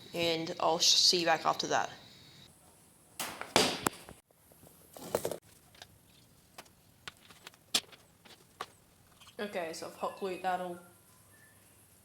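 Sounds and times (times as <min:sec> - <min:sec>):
rustling: 0:02.5 - 0:09.5.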